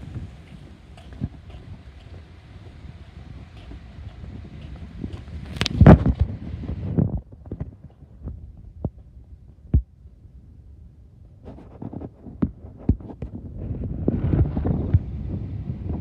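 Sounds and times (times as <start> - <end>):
low thumps and knocks: 0.0 - 9.9
wind buffeting microphone: 0.0 - 16.0.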